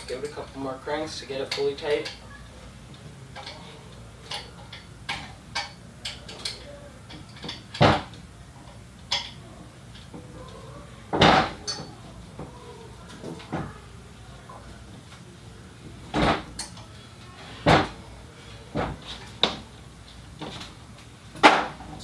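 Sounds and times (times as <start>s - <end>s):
loud knocks: 17.7s - 18.0s.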